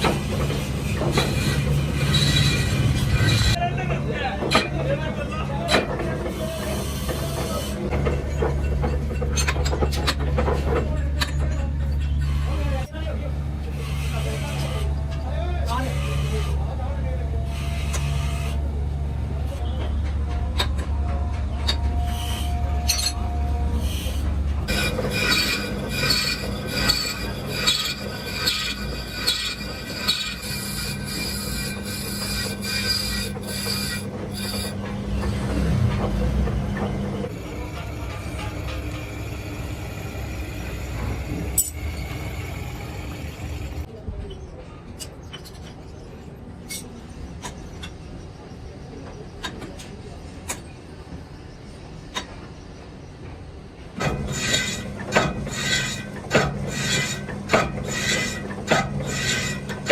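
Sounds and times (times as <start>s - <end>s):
low mechanical hum: 0.0s - 59.9s
high metallic squeal: 1.2s - 3.6s, 21.9s - 35.3s, 54.3s - 59.9s
machinery low hum: 16.0s - 43.9s.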